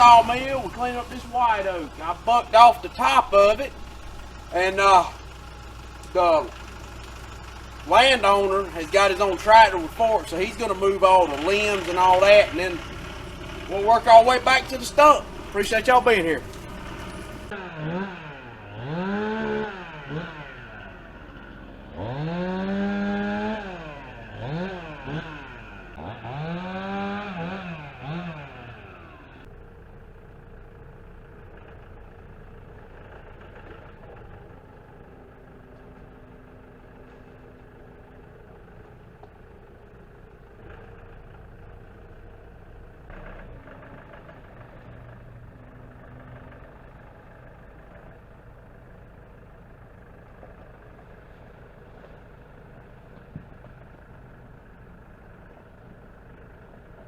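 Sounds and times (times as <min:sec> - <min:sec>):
chainsaw revving: 0:00.0 - 0:29.5
chainsaw engine idling hum: 0:00.0 - 0:57.0.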